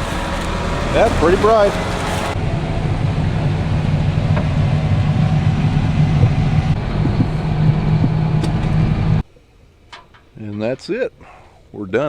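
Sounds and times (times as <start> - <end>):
diesel engine running: 0.0 - 9.2.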